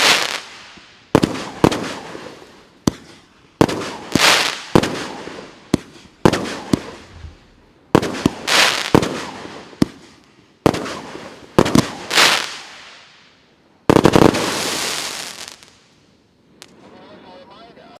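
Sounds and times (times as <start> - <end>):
firework crackling: 0.0 - 17.0
firework cake bangs: 2.8 - 7.4.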